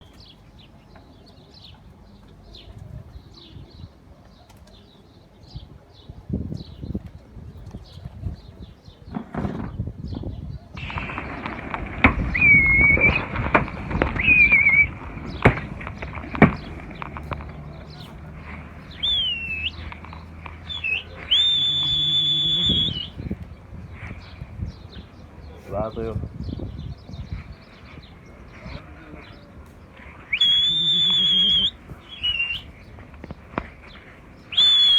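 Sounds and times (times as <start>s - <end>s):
birds chirping: 0.0s - 34.9s
person whistling: 19.0s - 19.8s, 20.7s - 23.2s, 30.3s - 32.6s, 34.5s - 34.9s.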